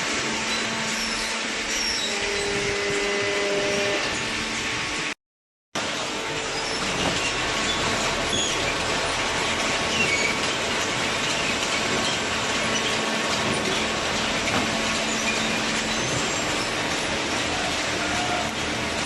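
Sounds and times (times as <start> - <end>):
machinery running: 5.8 - 19.0.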